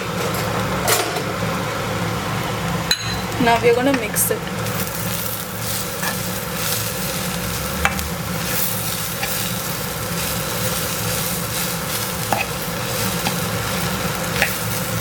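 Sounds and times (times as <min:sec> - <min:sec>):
oil sizzling in a pan: 0:00.3 - 0:15.0
spatula stirring in a pan: 0:04.5 - 0:15.0.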